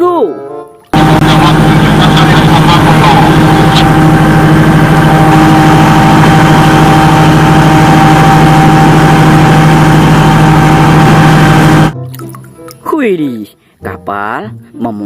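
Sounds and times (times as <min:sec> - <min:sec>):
motor humming: 0:01.0 - 0:12.0.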